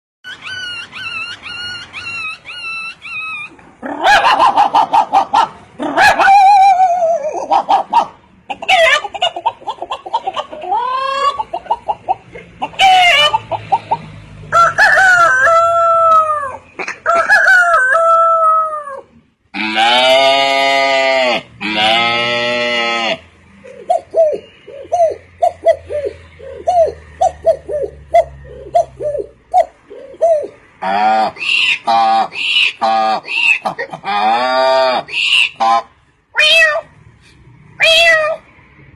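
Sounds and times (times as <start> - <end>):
man imitating chicken cackles: 0.3 - 14.0, 14.6 - 36.9
man imitating chicken clucks: 0.3 - 14.0, 14.6 - 35.9
man imitating rooster crowing: 14.6 - 23.1.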